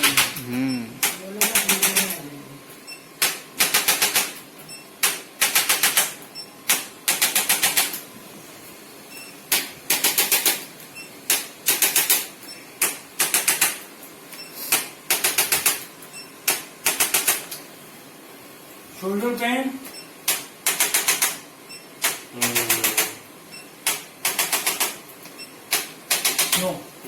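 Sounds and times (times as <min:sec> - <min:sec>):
sharp mechanical clicks: 0:01.0 - 0:02.2, 0:03.2 - 0:04.4, 0:05.0 - 0:08.0, 0:09.5 - 0:10.7, 0:11.3 - 0:13.9, 0:14.7 - 0:17.6, 0:19.9 - 0:21.4, 0:22.0 - 0:23.2, 0:23.8 - 0:26.7.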